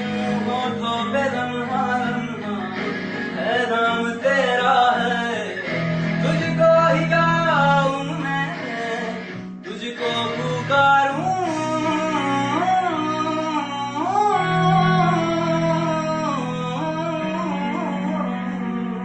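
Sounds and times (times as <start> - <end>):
guitar: 0.0 - 19.0
person singing wordless melody: 0.0 - 19.0.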